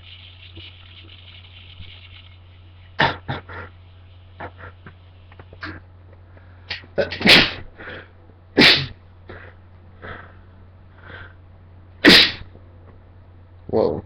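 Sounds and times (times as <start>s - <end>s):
person sneezing loudly: 3.0s - 3.7s, 7.0s - 8.0s, 8.6s - 9.0s, 12.0s - 12.5s
short quick breaths: 9.3s - 11.4s.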